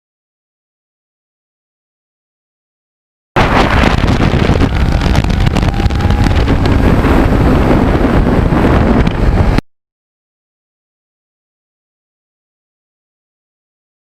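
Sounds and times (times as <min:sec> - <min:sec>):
wind buffeting microphone: 0:03.4 - 0:09.6.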